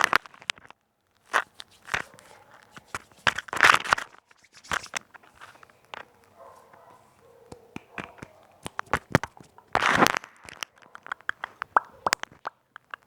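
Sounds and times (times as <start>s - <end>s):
crackling against microphone: 0.0s - 13.0s.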